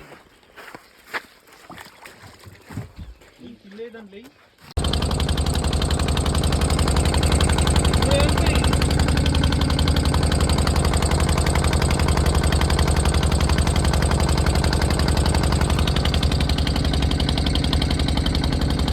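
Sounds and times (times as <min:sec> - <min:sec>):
engine running with pulsing beat: 0:04.8 - 0:18.9.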